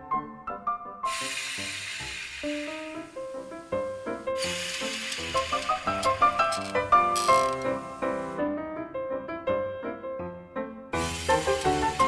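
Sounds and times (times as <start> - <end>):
hissing wash: 1.1 - 8.4, 11.0 - 12.0
keyboard-like background music: 10.7 - 12.0.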